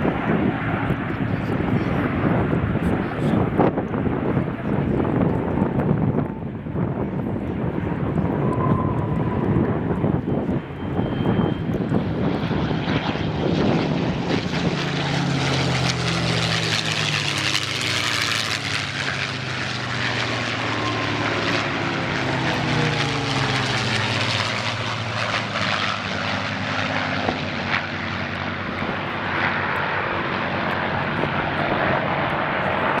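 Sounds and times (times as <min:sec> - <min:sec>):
propeller plane flying past: 0:00.0 - 0:33.0.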